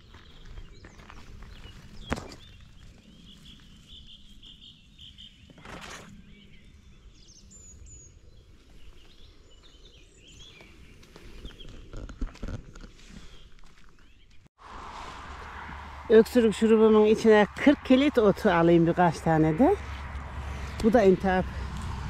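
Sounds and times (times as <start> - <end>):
small birds chirping: 0.0 - 14.5
low rumble: 14.6 - 22.0.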